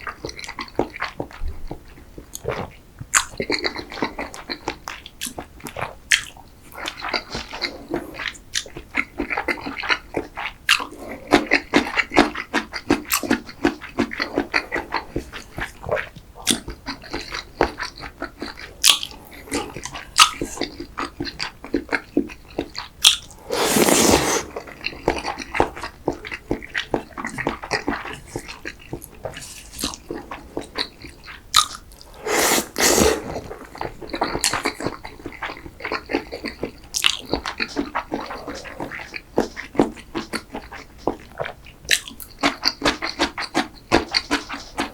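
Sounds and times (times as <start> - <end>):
wet chewing and mouth clicks: 0.0 - 44.9
loud slurps: 23.3 - 24.8, 32.0 - 33.8.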